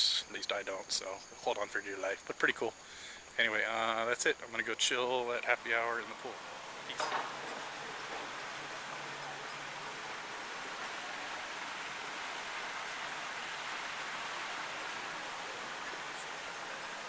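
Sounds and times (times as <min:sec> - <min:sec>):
steady rushing noise: 0:05.4 - 0:17.0.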